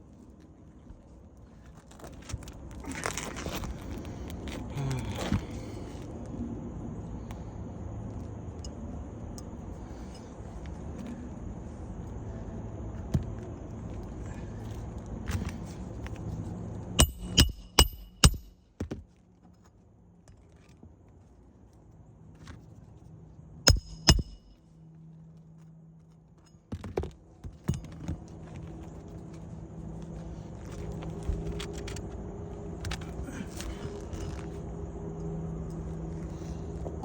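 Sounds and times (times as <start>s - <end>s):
faint steady hum: 0.0s - 37.0s
metal tool clinking: 17.0s - 18.6s, 23.7s - 24.4s.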